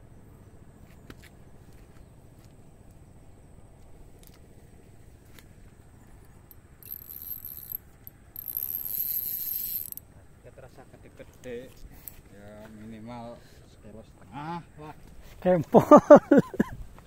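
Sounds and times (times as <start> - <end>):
fishing reel buzzing: 6.8 - 10.0.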